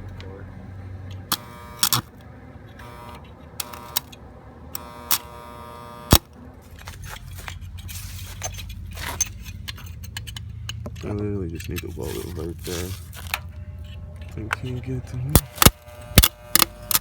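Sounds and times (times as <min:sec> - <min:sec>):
short buzzing bursts: 0:01.2 - 0:02.1, 0:02.7 - 0:06.3, 0:15.0 - 0:17.0
sharp clicks and knocks: 0:06.8 - 0:12.0.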